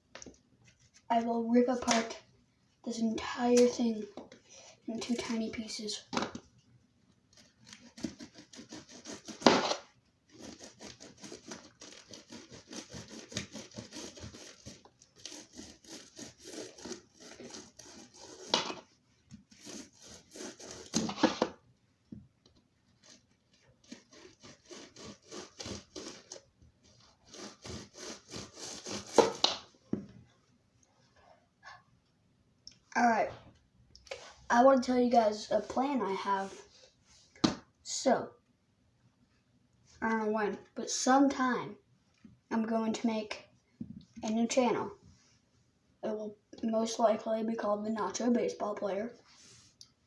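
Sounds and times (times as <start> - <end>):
knife sawing through rubber ball: 7.4 - 21.5, 23.0 - 26.4, 27.0 - 29.6.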